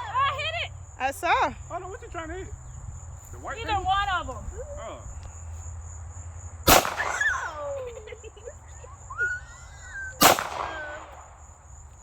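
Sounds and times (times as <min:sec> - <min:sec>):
crickets buzzing: 0:00.0 - 0:12.0
pistol shots with echo: 0:06.7 - 0:07.6, 0:10.2 - 0:11.4.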